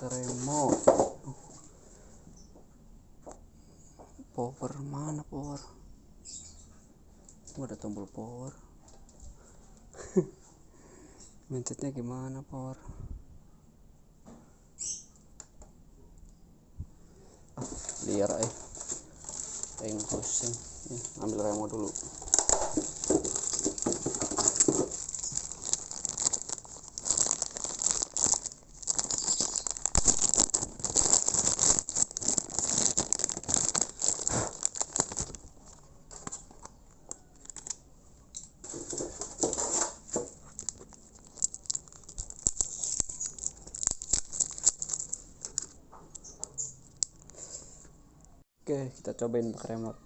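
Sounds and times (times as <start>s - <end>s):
plastic packaging crinkling: 0.0s - 1.1s, 17.6s - 37.8s, 38.6s - 47.5s.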